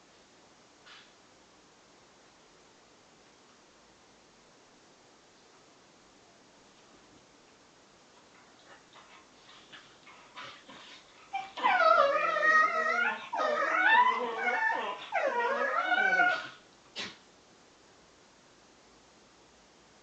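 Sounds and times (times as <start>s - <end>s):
dog whining cries: 11.3s - 16.6s.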